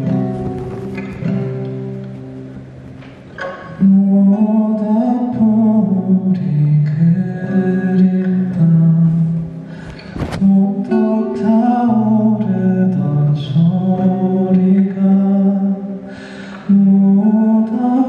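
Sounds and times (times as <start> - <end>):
man singing: 3.6 - 18.0.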